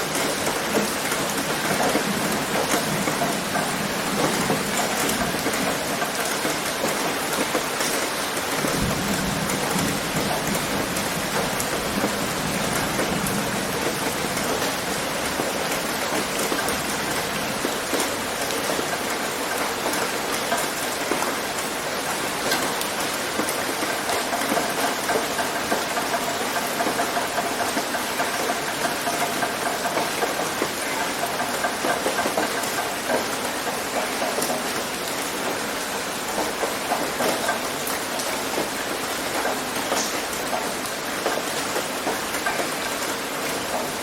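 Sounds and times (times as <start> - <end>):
rain on a tin roof: 0.0 - 44.0.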